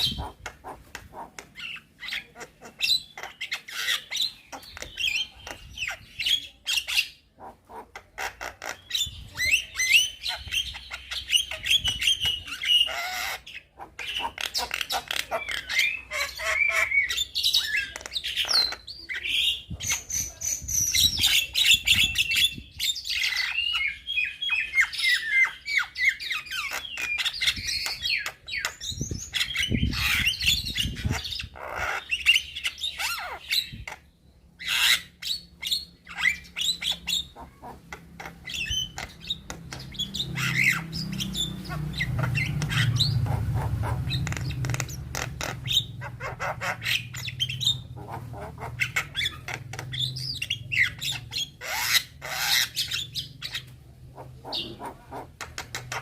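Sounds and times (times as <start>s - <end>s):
myna singing and chattering: 0.0s - 10.6s.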